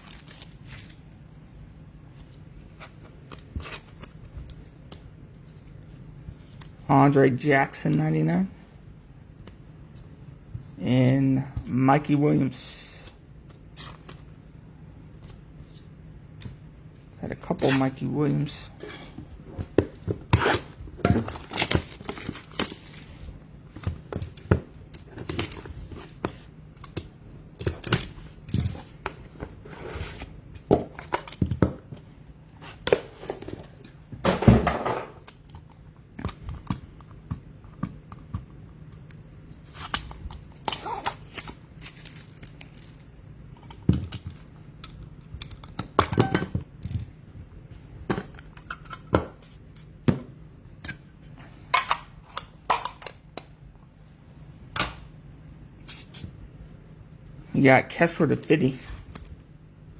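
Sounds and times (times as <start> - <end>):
card packs tearing open: 20.3 - 23.2, 39.7 - 43.1
wrappers crinkling: 40.8 - 43.1.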